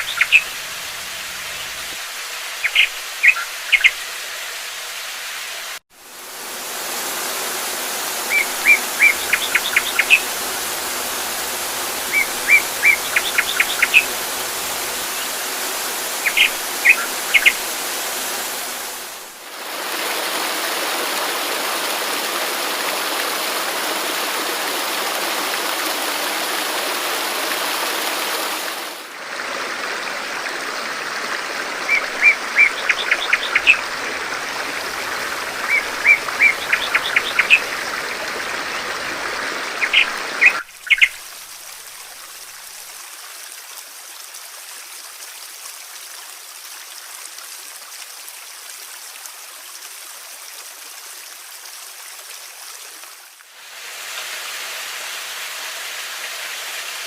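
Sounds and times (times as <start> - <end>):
songbird chirping: 0.0 - 0.6, 2.6 - 4.1, 8.2 - 18.2, 31.9 - 34.0, 35.2 - 37.9, 39.8 - 41.2
soft hiss of running water: 0.0 - 57.0
stream water rushing: 0.0 - 57.0.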